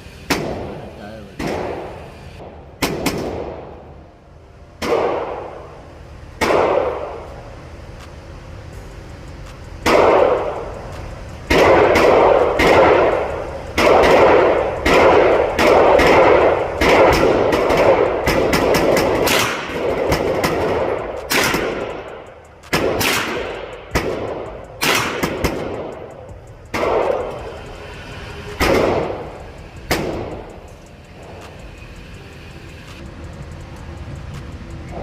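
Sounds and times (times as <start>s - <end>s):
gunshots reverberating: 0.3s - 0.8s, 1.4s - 3.9s, 4.8s - 5.8s, 6.4s - 7.3s, 9.8s - 10.8s, 11.5s - 27.4s, 28.6s - 30.5s.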